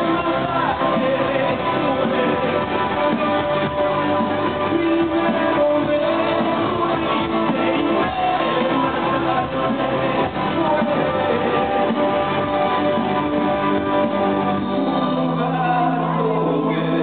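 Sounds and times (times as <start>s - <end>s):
muffled live rock band: 0.0s - 17.0s.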